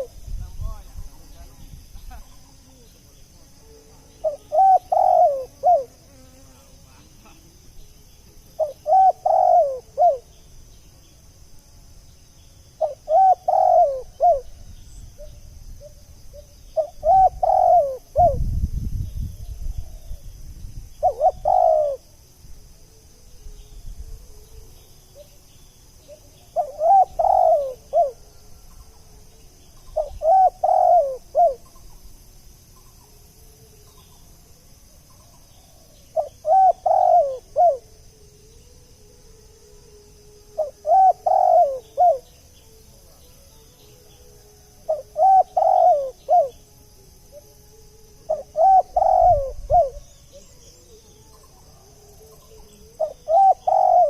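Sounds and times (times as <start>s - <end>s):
dove cooing: 0.0s - 0.2s, 2.2s - 7.4s, 8.5s - 10.4s, 12.8s - 14.6s, 15.2s - 18.5s, 21.0s - 22.2s, 26.0s - 29.2s, 29.8s - 31.8s, 35.2s - 38.8s, 39.8s - 47.6s, 48.2s - 54.0s
high insect hum: 0.0s - 54.0s.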